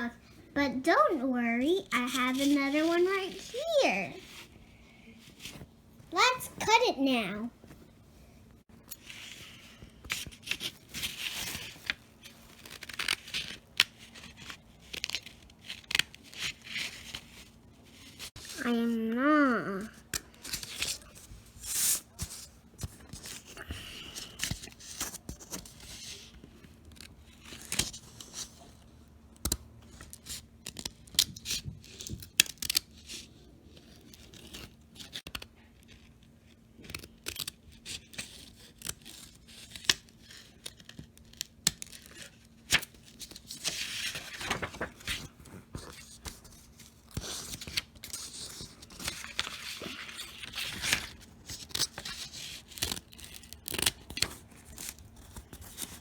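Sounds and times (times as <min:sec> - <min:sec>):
paper rustling: 0:42.7 - 0:56.0.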